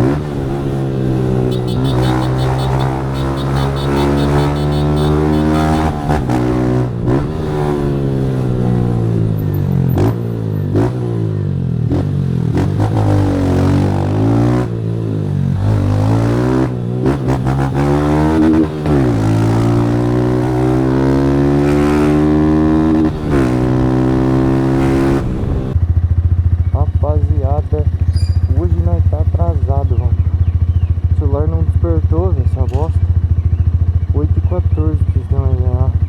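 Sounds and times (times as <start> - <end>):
motorcycle accelerating through gears: 0.0 - 26.8.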